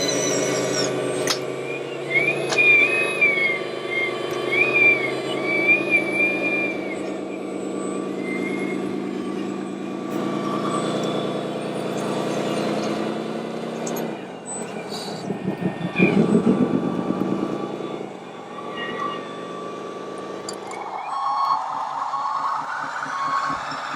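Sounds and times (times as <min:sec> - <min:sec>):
diesel truck engine sound: 0:00.0 - 0:23.9
throbbing engine burst: 0:00.0 - 0:23.9.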